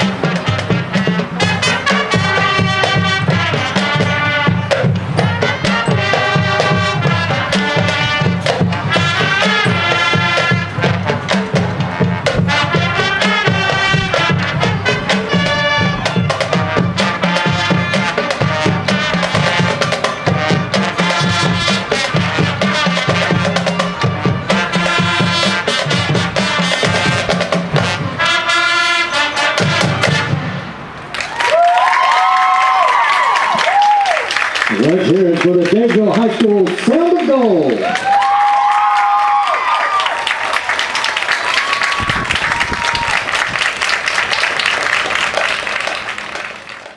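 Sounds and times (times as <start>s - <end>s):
drumline beat: 0.0s - 30.6s
brass holding chords: 0.0s - 31.0s.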